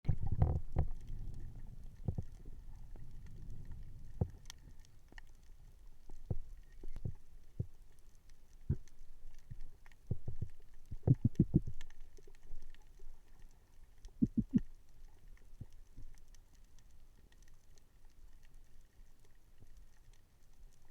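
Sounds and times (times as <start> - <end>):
low underwater rumble: 0.0 - 16.2
underwater knocks and clicks: 0.0 - 16.3.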